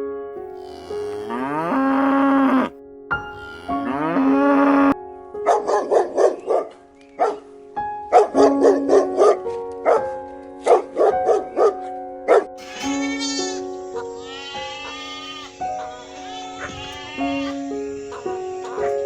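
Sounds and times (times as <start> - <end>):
cow mooing: 0.5 - 5.0, 12.6 - 19.0
dog barking: 5.4 - 7.4, 8.1 - 19.0.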